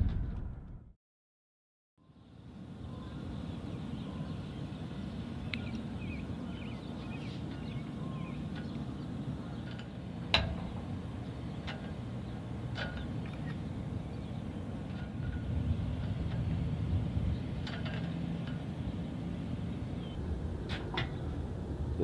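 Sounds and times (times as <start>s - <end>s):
faint bird chirps: 2.0s - 9.7s
low rumble of ambience: 2.0s - 22.0s.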